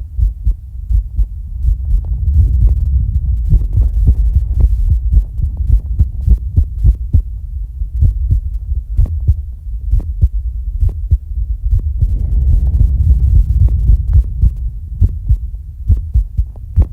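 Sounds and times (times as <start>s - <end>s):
fast heartbeat: 0.0s - 16.9s.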